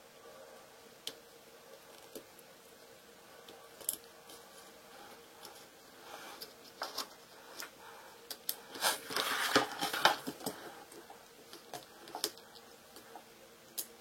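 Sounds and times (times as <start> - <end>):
film crinkling rustle: 8.5 - 12.6.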